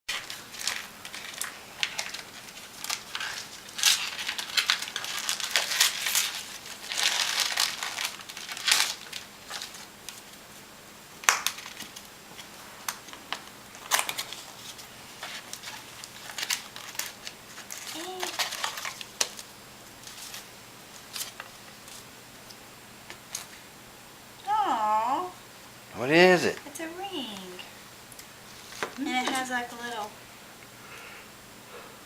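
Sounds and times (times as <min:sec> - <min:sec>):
wrapping paper crinkling: 0:00.1 - 0:22.1, 0:28.5 - 0:29.9.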